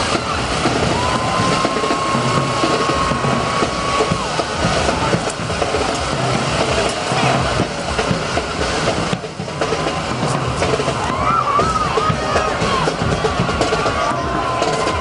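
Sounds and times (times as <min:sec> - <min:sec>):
vehicle engines running: 0:00.0 - 0:15.0.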